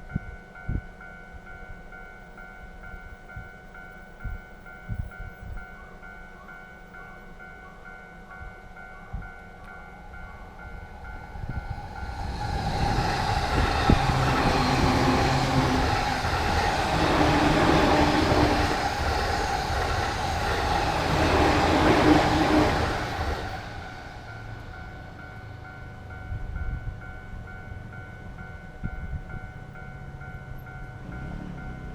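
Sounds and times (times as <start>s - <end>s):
electronic crossing warning bell: 0.0s - 31.9s
train rumbling past: 6.8s - 31.9s.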